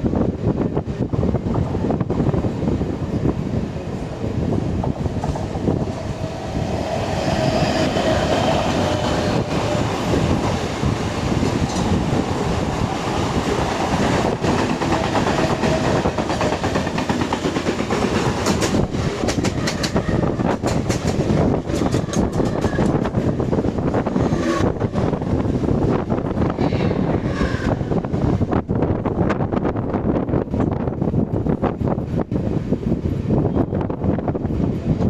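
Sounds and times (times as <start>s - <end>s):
train wheels rumbling on rail: 0.0s - 35.0s
wheels clicking over rail joints: 9.2s - 24.1s.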